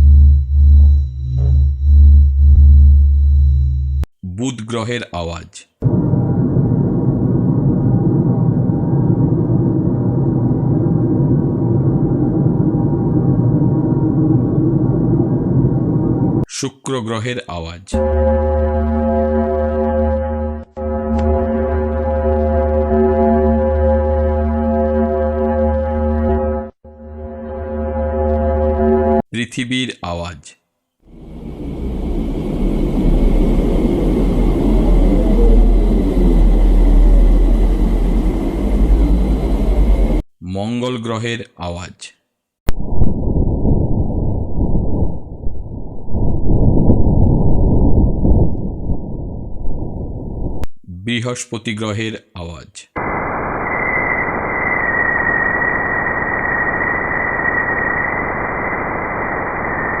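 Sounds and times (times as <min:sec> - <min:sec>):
deep rumbling drone: 0:00.0 - 0:04.1, 0:05.8 - 0:16.5, 0:18.0 - 0:29.2, 0:31.1 - 0:40.2, 0:42.7 - 0:50.7
wavering tones rising and falling: 0:31.1 - 0:40.2.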